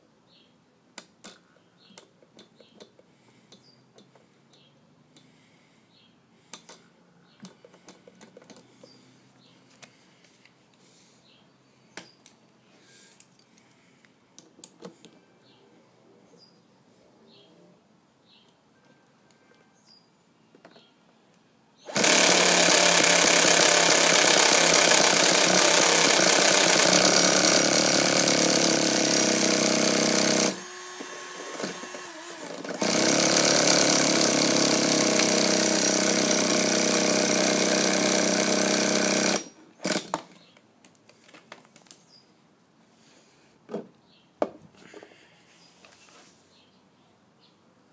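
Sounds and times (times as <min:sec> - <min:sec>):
starter motor whirring: 0:21.9 - 0:40.2.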